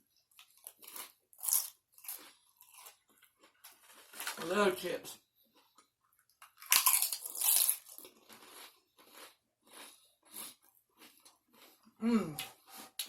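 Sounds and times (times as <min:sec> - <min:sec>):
chewing crunches: 0:00.3 - 0:04.4, 0:05.5 - 0:13.0
crunchy bite into potato chips: 0:00.4 - 0:04.4, 0:06.6 - 0:11.8.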